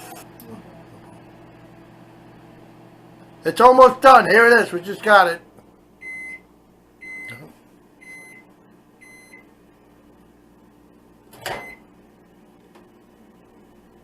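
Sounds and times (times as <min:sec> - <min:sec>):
microwave oven beeps: 0:06.0 - 0:09.5, 0:11.4 - 0:11.9.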